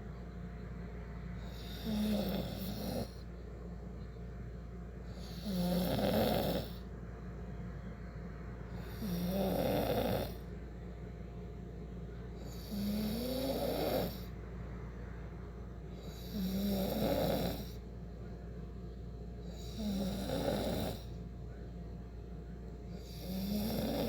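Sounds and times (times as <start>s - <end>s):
person snoring: 1.4s - 3.2s, 5.1s - 6.8s, 8.8s - 10.5s, 12.4s - 14.3s, 16.0s - 17.8s, 19.5s - 21.1s, 22.9s - 24.0s.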